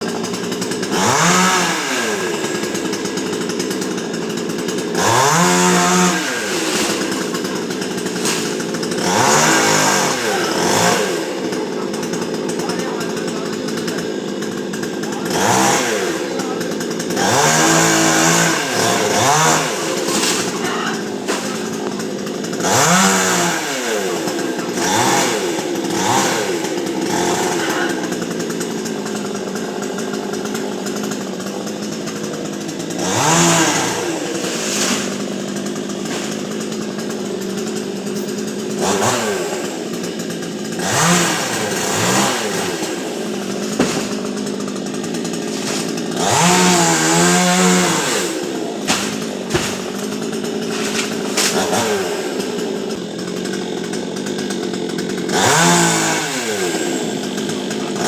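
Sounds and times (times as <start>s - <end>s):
chainsaw idling and revving: 0.0s - 58.0s.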